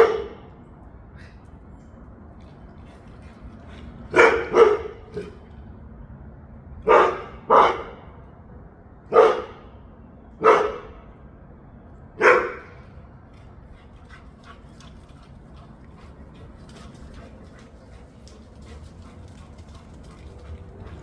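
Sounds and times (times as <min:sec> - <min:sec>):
dog barking: 0:00.0 - 0:00.5, 0:04.1 - 0:05.4, 0:06.8 - 0:08.1, 0:09.1 - 0:09.7, 0:10.4 - 0:11.0, 0:12.2 - 0:12.8.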